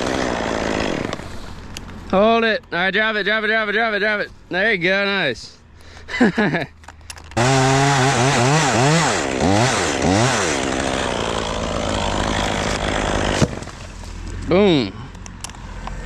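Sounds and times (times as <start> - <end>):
chainsaw revving: 0.0 - 1.3, 7.4 - 14.0.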